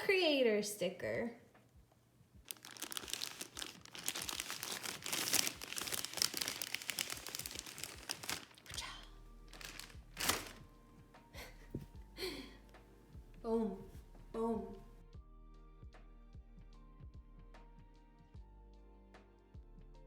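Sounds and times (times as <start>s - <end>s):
packaging crinkling and rustling: 2.5s - 10.6s.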